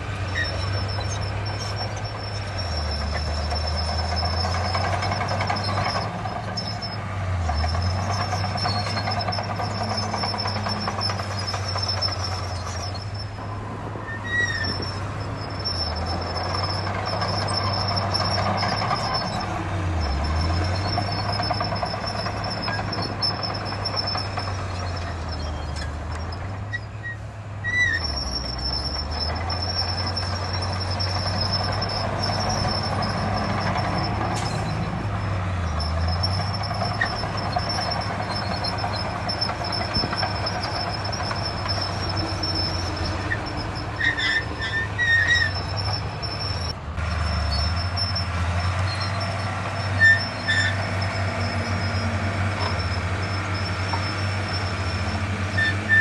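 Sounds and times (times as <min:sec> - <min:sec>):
heavy machinery diesel engine: 0:00.0 - 0:56.0
metallic squeaks: 0:00.0 - 0:56.0.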